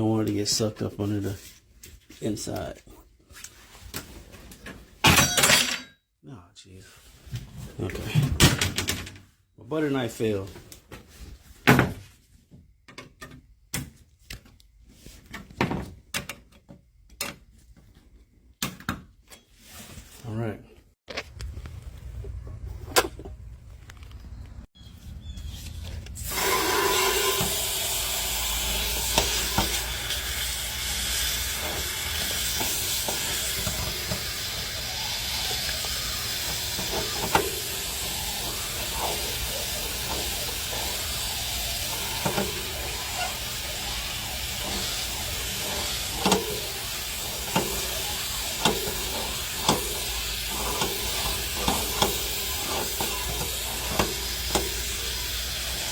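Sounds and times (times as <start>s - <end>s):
water spraying from a hose: 26.2s - 55.9s.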